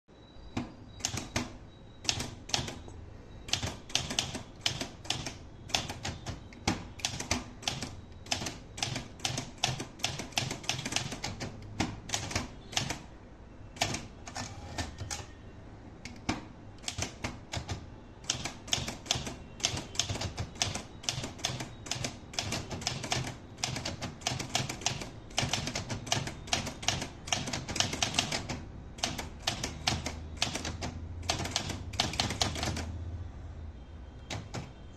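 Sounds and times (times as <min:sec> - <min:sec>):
manual typewriter typing: 0:00.6 - 0:02.9, 0:03.5 - 0:13.0, 0:13.8 - 0:15.3, 0:16.1 - 0:33.0, 0:34.3 - 0:34.8.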